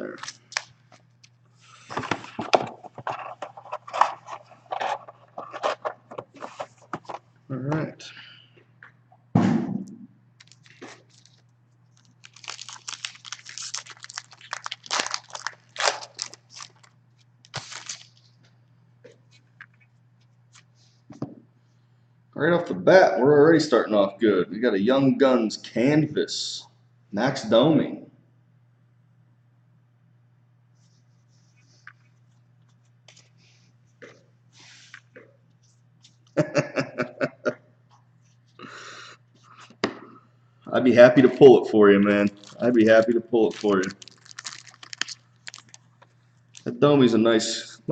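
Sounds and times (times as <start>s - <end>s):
thump: 9.4s - 9.9s
card pack wrapper tearing and crinkling: 10.4s - 11.4s, 12.0s - 18.3s, 42.2s - 46.7s.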